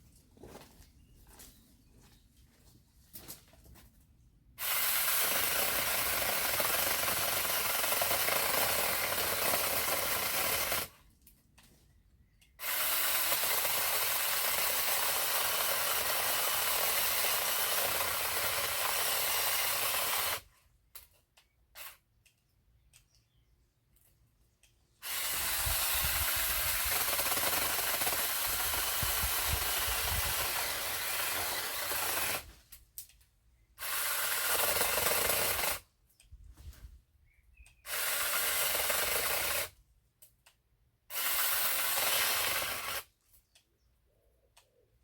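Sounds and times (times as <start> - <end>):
chainsaw cutting wood: 4.6 - 11.0, 12.5 - 21.1, 21.7 - 22.1, 25.0 - 32.8, 33.8 - 35.9, 37.8 - 39.8, 41.0 - 43.2.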